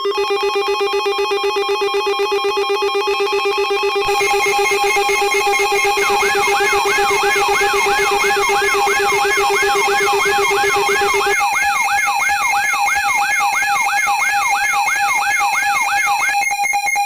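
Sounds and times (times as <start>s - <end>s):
steady held alarm tone: 0.0s - 17.0s
lower pulsing tone: 3.9s - 11.6s
electronic alarm falling sweep: 4.0s - 14.8s
rapid electronic beeping: 4.0s - 17.0s.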